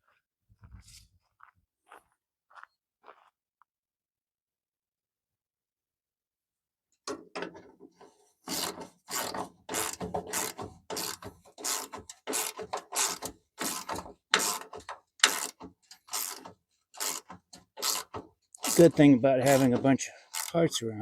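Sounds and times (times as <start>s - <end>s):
ratchet wrench ratcheting: 8.5s - 20.6s.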